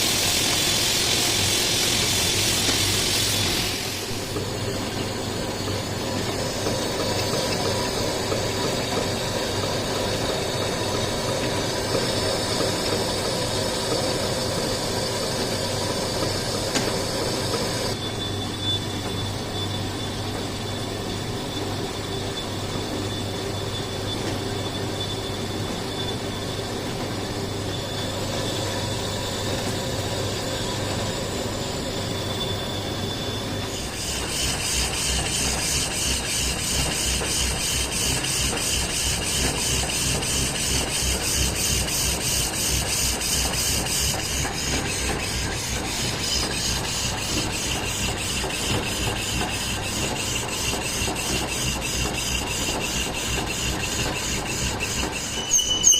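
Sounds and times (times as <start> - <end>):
lathe humming: 0.1 - 18.3, 20.0 - 55.6.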